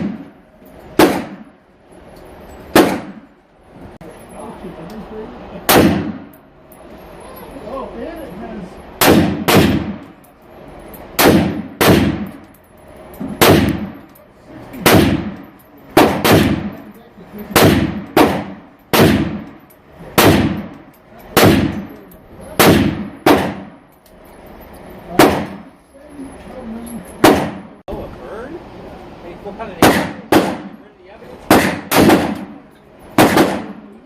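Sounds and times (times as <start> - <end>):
rifle shots with ringing echo: 0.0 - 0.4, 1.0 - 1.6, 2.7 - 3.3, 5.7 - 6.4, 9.0 - 10.2, 11.1 - 12.4, 13.4 - 14.1, 14.8 - 22.0, 22.6 - 23.8, 25.2 - 25.7, 27.2 - 27.8, 29.8 - 30.8, 31.5 - 34.0.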